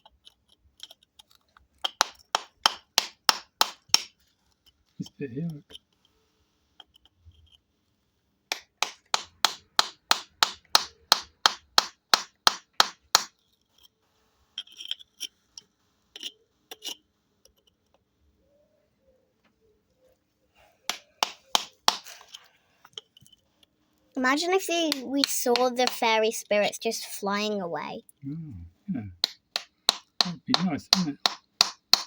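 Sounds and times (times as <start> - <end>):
tool tapping on stone: 1.8 - 4.2, 8.5 - 13.4, 20.9 - 23.0, 24.7 - 26.0, 29.2 - 32.0.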